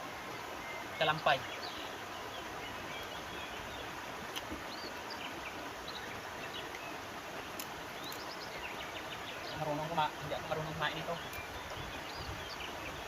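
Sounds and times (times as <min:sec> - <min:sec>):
river water rushing: 0:00.0 - 0:13.0
bird chirps: 0:08.0 - 0:13.0.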